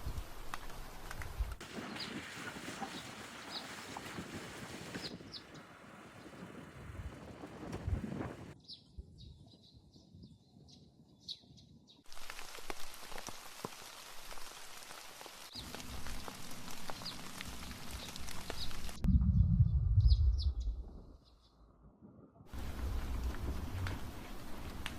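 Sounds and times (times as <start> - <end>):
rain falling: 12.1 - 19.1, 22.5 - 24.9.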